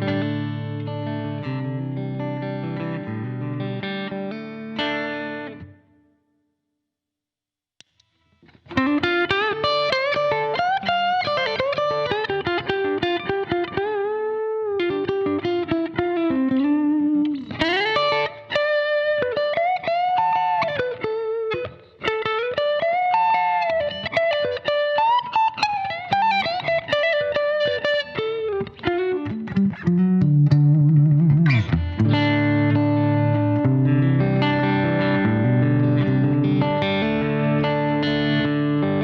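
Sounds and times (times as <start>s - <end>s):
clean electric guitar licks: 14.7s - 39.0s.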